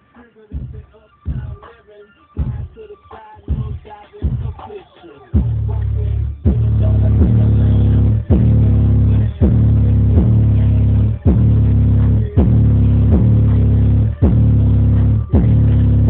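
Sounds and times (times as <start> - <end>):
hip hop music through subwoofer: 0.0 - 16.0.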